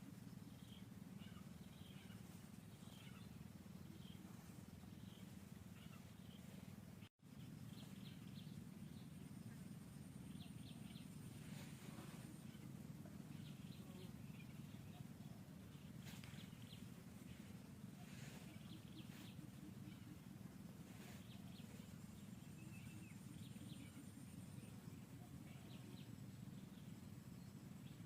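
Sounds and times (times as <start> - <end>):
steady low hum: 0.0 - 28.0.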